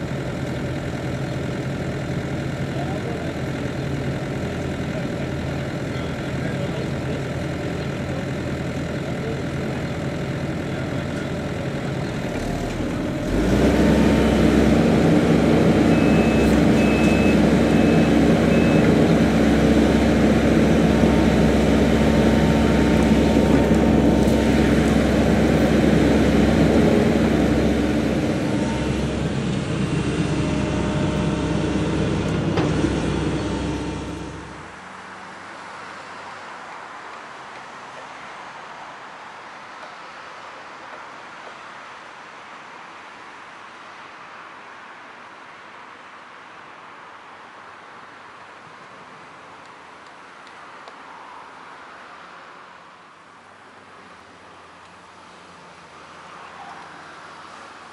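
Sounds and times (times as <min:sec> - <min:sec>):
construction machine engine: 0:00.0 - 0:35.9.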